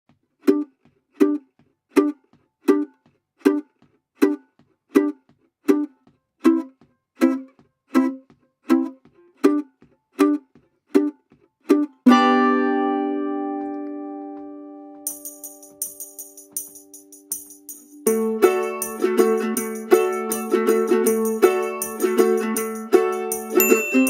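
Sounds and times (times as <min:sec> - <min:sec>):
plucked notes in steady pulse: 0:11.7 - 0:24.0
held chord: 0:12.1 - 0:24.0.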